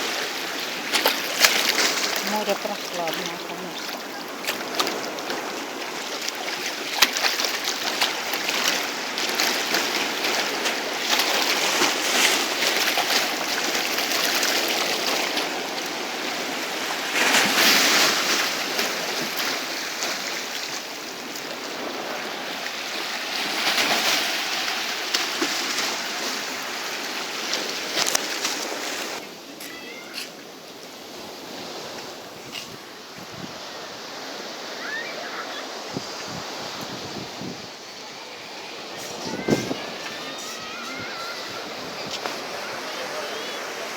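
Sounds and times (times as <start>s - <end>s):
sea waves washing onto shore: 0.0s - 43.9s.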